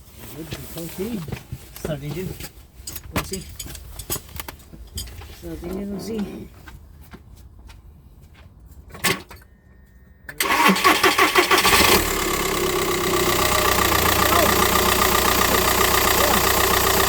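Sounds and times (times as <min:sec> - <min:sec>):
starter motor cranking: 0:10.4 - 0:17.0
car engine idling: 0:10.5 - 0:17.0.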